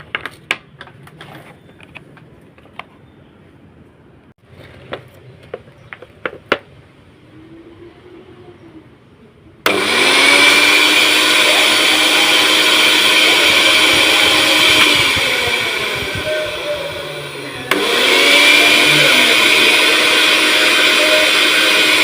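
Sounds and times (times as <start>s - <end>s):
blender motor running: 9.6s - 22.0s.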